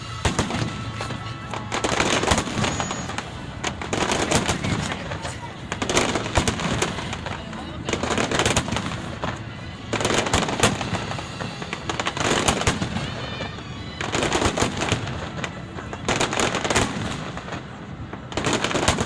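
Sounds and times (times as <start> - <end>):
fireworks bangs and crackling: 0.0 - 19.0.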